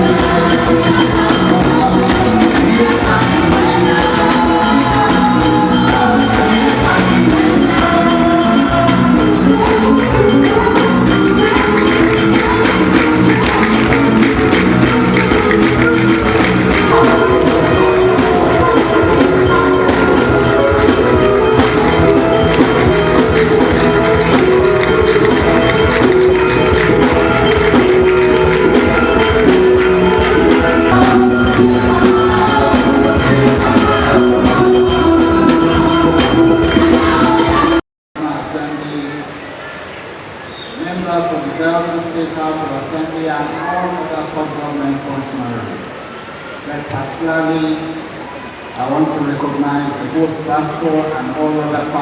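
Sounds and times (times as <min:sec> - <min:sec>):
drum and hand percussion: 0:00.0 - 0:37.8
voices singing: 0:00.0 - 0:37.8
band playing praise music: 0:00.0 - 0:52.0.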